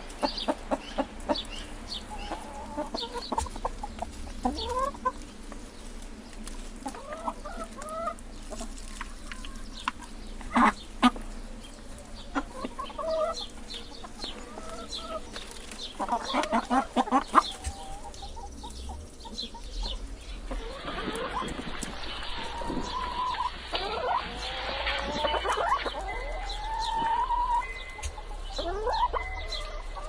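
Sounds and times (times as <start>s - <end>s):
hens clucking: 0.0s - 30.0s.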